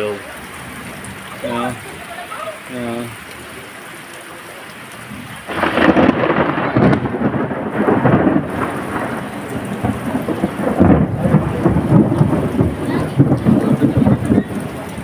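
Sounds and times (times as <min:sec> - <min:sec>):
heavy rain: 0:00.0 - 0:15.0
rolling thunder: 0:05.1 - 0:15.0.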